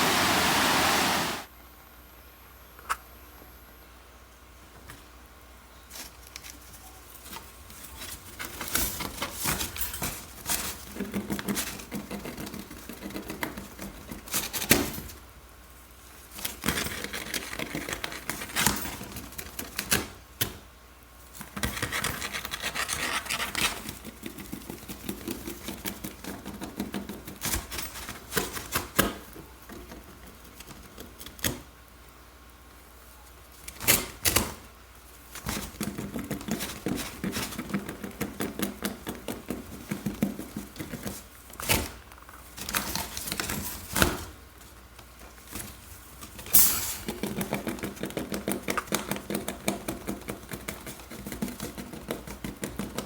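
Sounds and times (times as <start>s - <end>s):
rapid clicking and scratching: 10.4s - 14.7s, 16.3s - 20.0s, 21.4s - 31.6s, 35.3s - 43.6s, 47.1s - 53.0s.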